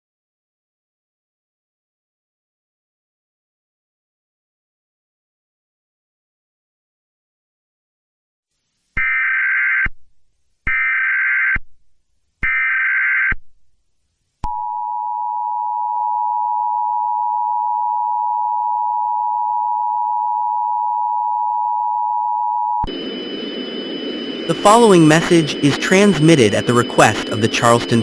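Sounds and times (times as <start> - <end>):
harsh two-tone alert signal: 22.8 - 28.0
screeching digital data bursts: 22.9 - 28.0.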